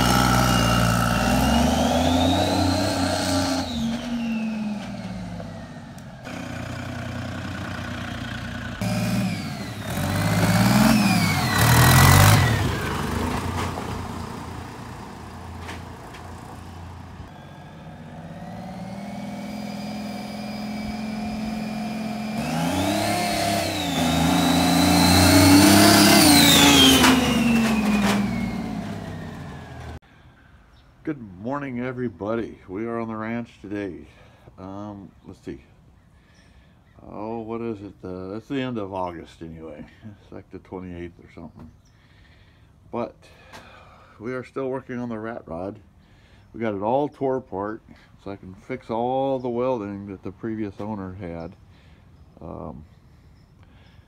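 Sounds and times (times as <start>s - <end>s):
engine accelerating: 0.0s - 30.0s.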